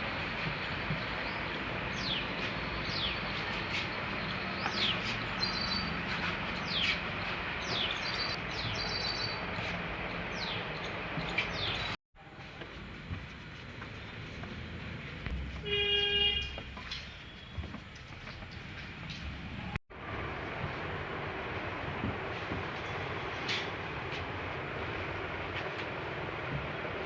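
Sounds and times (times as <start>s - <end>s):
birds chirping: 0.0s - 12.0s
small birds whistling: 0.6s - 12.0s.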